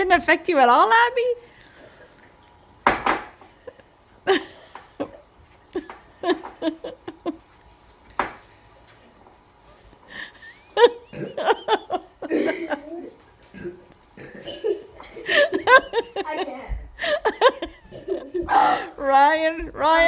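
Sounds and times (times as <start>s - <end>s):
stifled hiccup-like laughs: 10.9s - 12.8s.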